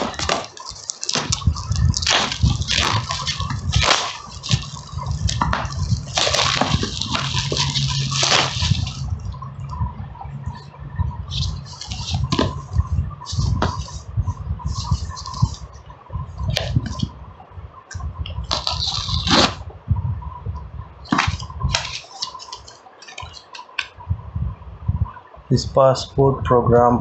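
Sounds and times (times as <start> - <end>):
cardboard and plastic rustling: 0.0 - 9.3, 11.3 - 14.1, 14.7 - 15.8, 16.4 - 17.2, 18.4 - 19.6, 21.0 - 24.0.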